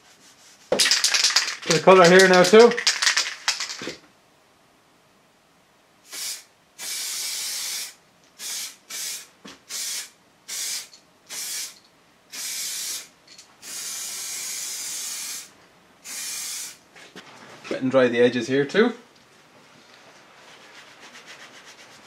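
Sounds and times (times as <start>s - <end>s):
aerosol paint spraying bursts: 6.1s - 16.8s.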